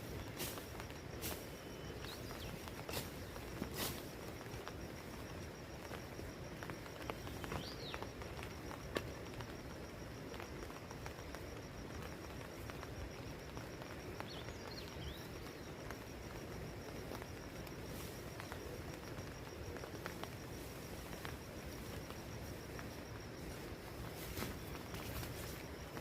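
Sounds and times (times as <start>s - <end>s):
insect trilling: 0.0s - 26.0s
bird chirp: 1.4s - 5.4s, 6.0s - 9.5s, 10.4s - 17.5s.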